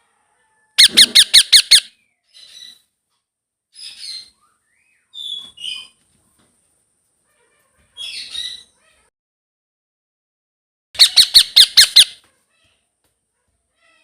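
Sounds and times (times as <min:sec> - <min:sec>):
parakeet chattering call: 0:00.8 - 0:01.9, 0:11.0 - 0:12.2
parakeet harsh squawks: 0:00.8 - 0:01.9, 0:11.0 - 0:12.2.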